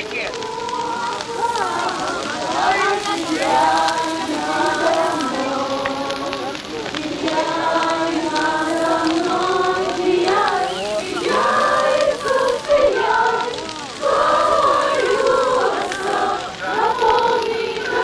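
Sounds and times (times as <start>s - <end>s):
group of people singing: 0.0s - 18.0s.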